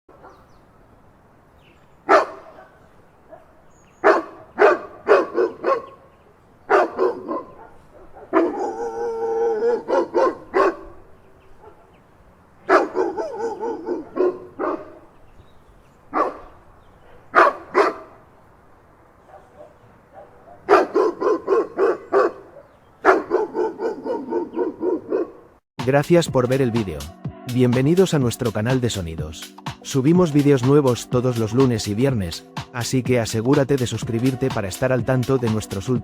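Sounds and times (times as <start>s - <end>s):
big dog barking: 2.1s - 12.0s, 12.6s - 15.2s, 16.1s - 18.3s, 19.2s - 25.6s.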